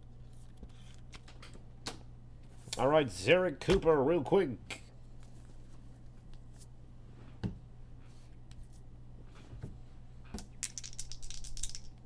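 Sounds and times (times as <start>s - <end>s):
low electrical hum: 0.0s - 12.0s
dice rattling and tumbling: 10.5s - 12.0s.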